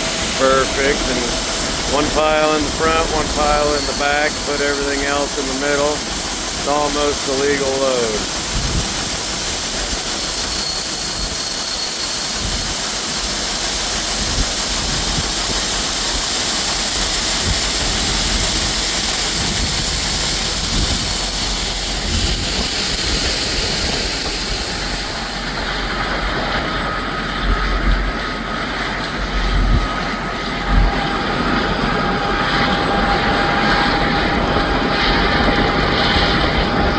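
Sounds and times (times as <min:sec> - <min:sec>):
tractor and auger roar: 0:00.0 - 0:10.8
hiss of flowing grain: 0:00.0 - 0:26.7.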